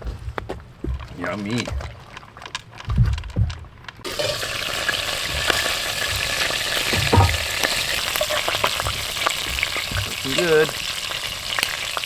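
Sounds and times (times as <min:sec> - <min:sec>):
food sizzling in hot pan: 0:04.1 - 0:12.0
cookware knocks: 0:06.2 - 0:09.0.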